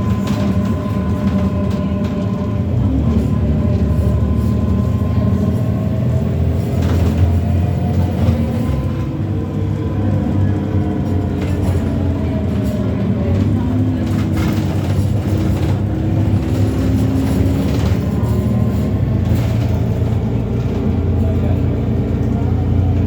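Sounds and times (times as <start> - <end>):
bus engine rumble: 0.0 - 23.0.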